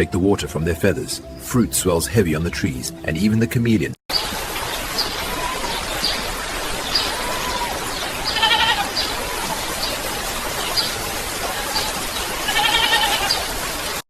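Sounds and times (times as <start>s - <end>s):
steady rain hiss: 4.1s - 14.0s
animal calling: 7.0s - 9.7s, 11.4s - 13.5s.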